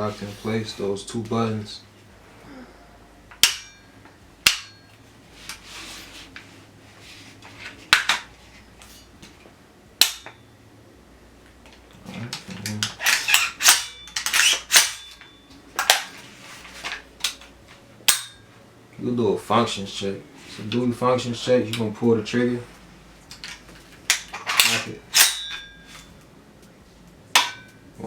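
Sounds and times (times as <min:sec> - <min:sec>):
metallic clicks of rifle parts: 0:12.6 - 0:15.2.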